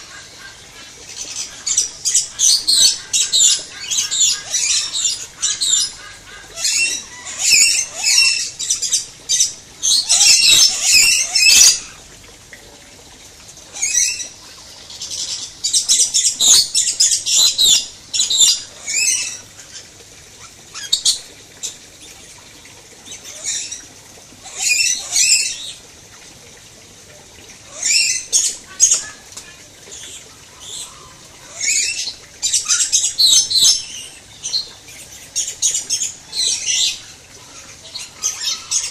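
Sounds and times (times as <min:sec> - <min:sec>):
lorikeets screeching: 0:01.3 - 0:12.0, 0:30.6 - 0:34.7, 0:35.3 - 0:38.9.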